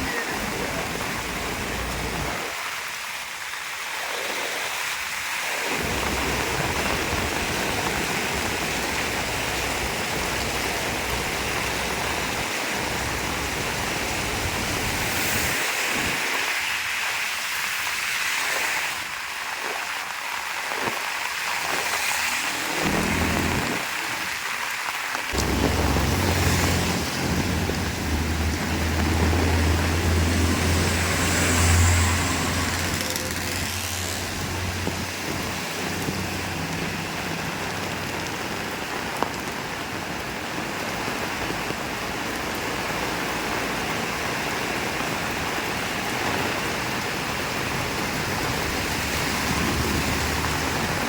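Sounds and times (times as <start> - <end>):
heavy rain falling: 0.0 - 51.0
low rumble: 25.4 - 35.5.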